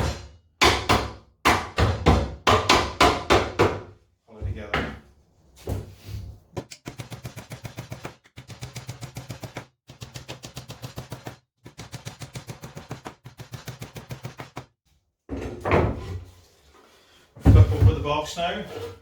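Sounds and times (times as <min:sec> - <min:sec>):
hammer tapping wooden joints: 0:00.6 - 0:03.9.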